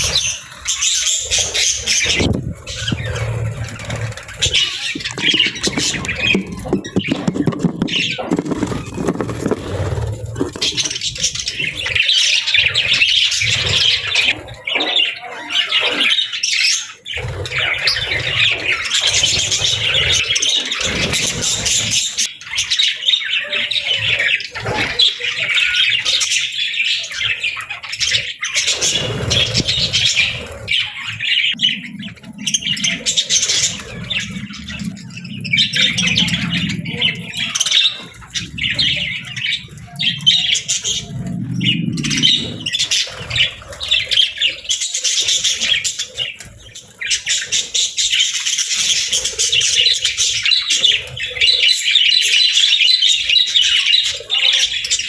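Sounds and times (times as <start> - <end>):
budgies chirping and squawking: 0.0 - 55.0
low rumble: 31.6 - 44.0.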